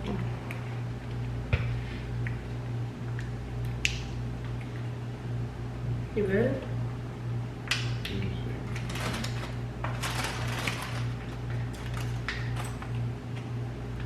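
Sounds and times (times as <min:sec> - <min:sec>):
low electrical hum: 0:00.0 - 0:14.0
food packaging crinkling: 0:08.7 - 0:12.9.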